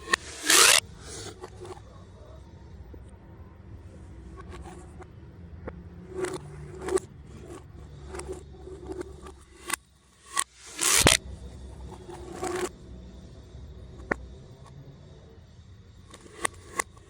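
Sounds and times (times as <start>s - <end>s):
toy pipes scraping and ratcheting: 0.0s - 1.8s, 6.0s - 11.2s.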